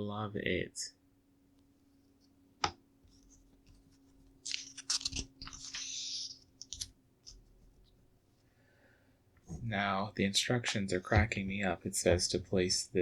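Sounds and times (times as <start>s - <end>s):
plastic pieces rustling: 4.4s - 6.9s
plastic pieces clicking: 6.6s - 6.9s.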